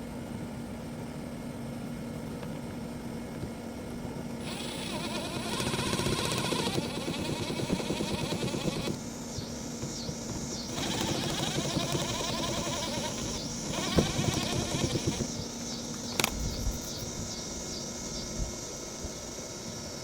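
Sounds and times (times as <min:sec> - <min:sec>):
cordless drill motor buzz: 0:04.4 - 0:17.3
sharp click: 0:13.3 - 0:17.1.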